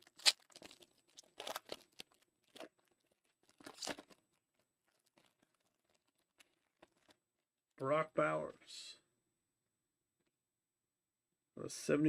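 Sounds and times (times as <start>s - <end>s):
foil wrapper tearing and crinkling: 0.0s - 7.2s.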